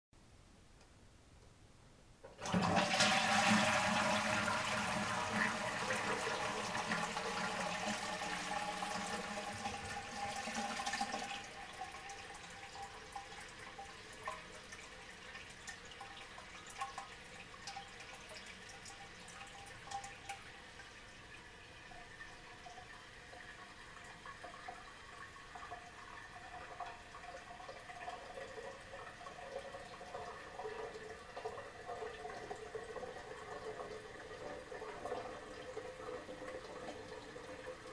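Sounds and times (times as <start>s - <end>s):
toilet flushing: 2.3s - 37.9s
water trickling and dripping: 11.1s - 37.9s.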